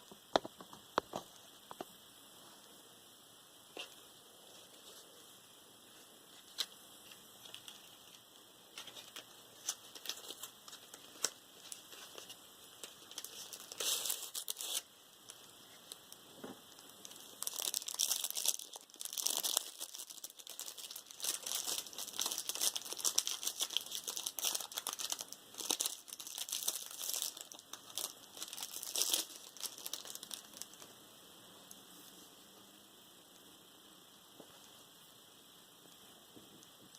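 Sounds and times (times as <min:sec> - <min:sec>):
packaging crinkling and rustling: 0:06.3 - 0:30.9.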